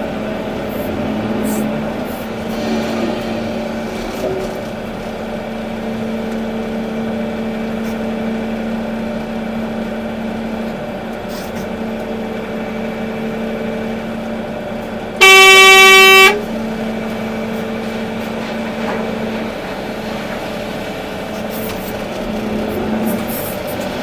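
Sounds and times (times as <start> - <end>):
excavator diesel engine running: 0.0 - 24.0
loud horn blast: 15.2 - 16.5.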